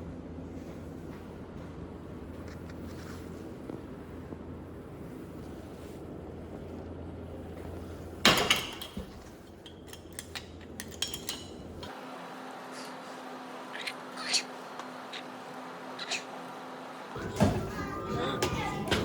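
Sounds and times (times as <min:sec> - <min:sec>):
steady low hum: 0:00.0 - 0:19.0
dishes and cutlery clattering: 0:08.3 - 0:11.7.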